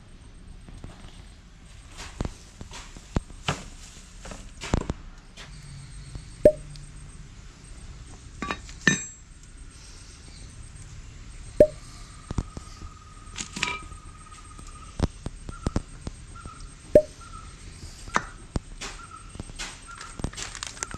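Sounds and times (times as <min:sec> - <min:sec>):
faint steady tone: 0:05.6 - 0:18.1
metal tools clinking and knocking: 0:08.4 - 0:09.2.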